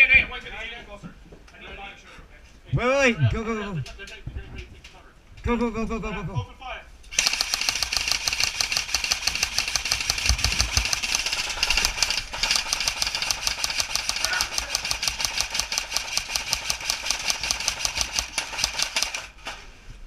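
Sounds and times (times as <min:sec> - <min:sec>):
airsoft gun automatic fire: 0:07.1 - 0:19.6.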